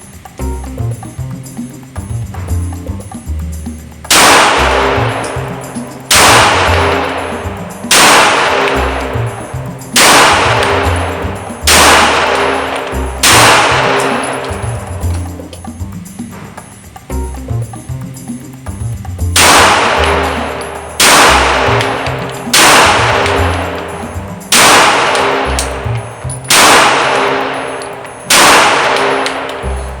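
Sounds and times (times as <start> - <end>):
background music: 0.0 - 30.0
pistol shots ringing: 4.1 - 15.3, 19.4 - 30.0.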